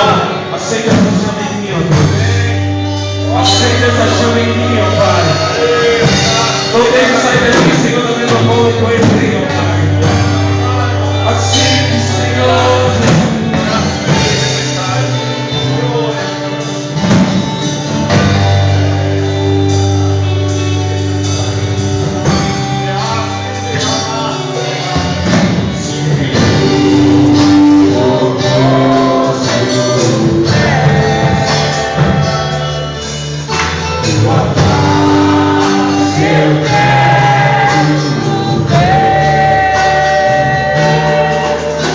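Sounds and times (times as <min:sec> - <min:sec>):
singing: 0:00.0 - 0:16.2, 0:22.9 - 0:41.9
drums keeping steady beat: 0:00.0 - 0:41.9
held bass notes: 0:00.0 - 0:41.9.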